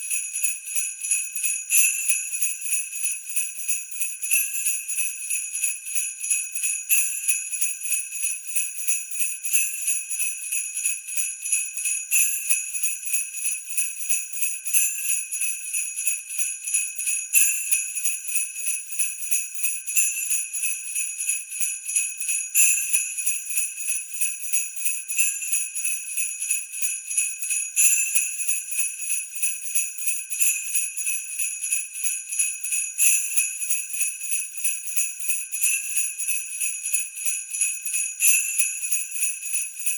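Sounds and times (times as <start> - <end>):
sleigh bells jingling: 16.0 - 39.9.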